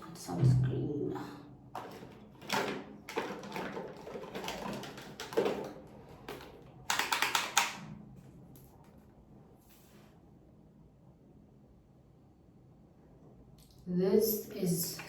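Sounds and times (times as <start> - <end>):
plastic containers clicking: 1.8 - 7.8.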